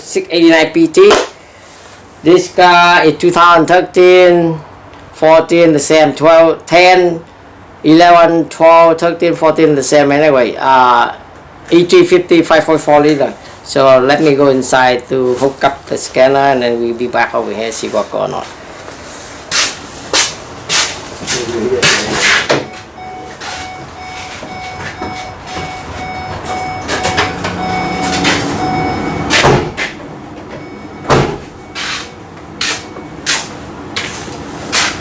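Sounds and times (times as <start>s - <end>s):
van door opening: 21.0s - 35.0s
person climbing into van cab: 21.2s - 35.0s
steady electronic beeping tone: 22.6s - 33.8s.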